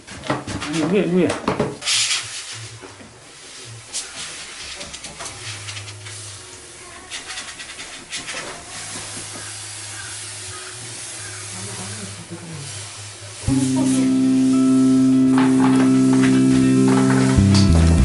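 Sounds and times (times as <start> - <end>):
steam cleaner hissing: 5.4 - 6.5, 7.1 - 18.0
background music: 13.5 - 18.0
low hum of unit: 13.5 - 18.0.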